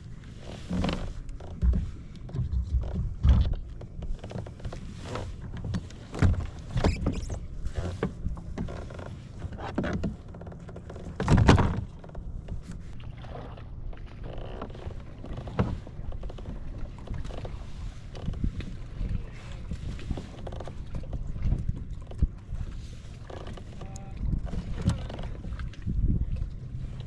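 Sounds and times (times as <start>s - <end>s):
water slapping against hull: 0.0s - 27.0s
knocks and thumps on boat: 0.2s - 27.0s.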